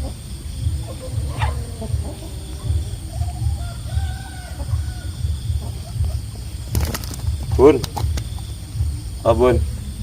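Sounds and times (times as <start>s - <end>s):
distant rooster crowing: 0.0s - 6.5s
regular low thumps: 0.0s - 10.0s
sharp clicks: 6.7s - 8.4s.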